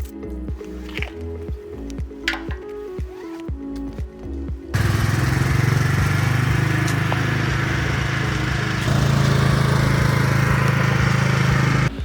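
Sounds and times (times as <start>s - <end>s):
two-stroke engine running: 4.7s - 12.0s.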